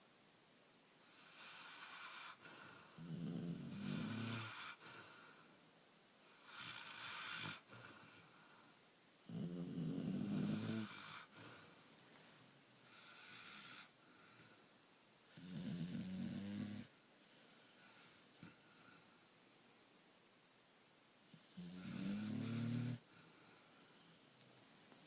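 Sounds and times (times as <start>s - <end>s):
puppy snoring: 1.0s - 5.5s, 6.2s - 14.6s, 15.2s - 19.3s, 21.2s - 24.2s.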